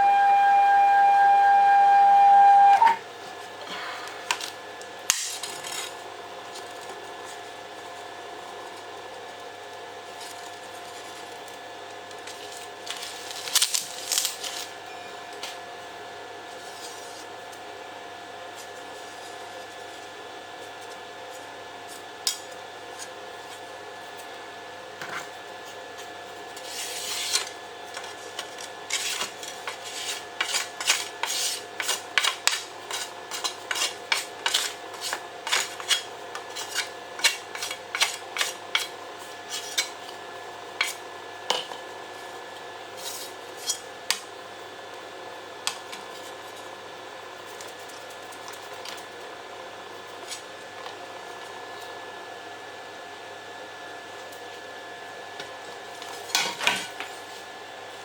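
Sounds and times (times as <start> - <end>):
router spindle whine: 0.0 - 3.0
metallic scraping of cutter: 28.9 - 38.9.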